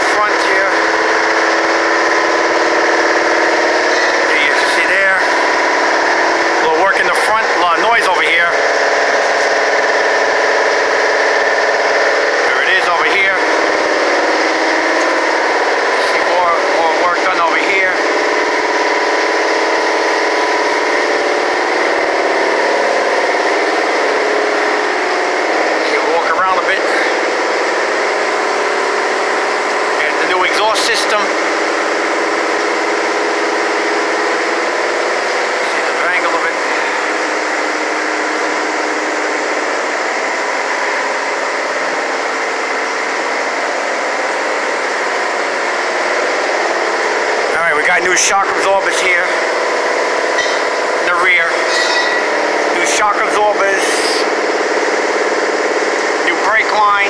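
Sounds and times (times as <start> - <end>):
shop machinery drone: 0.0 - 57.0.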